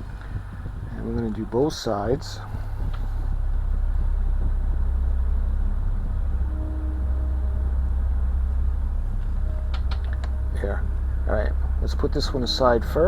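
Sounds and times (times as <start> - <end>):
low background hum: 0.0 - 13.0
faint brief tone: 2.9 - 13.0.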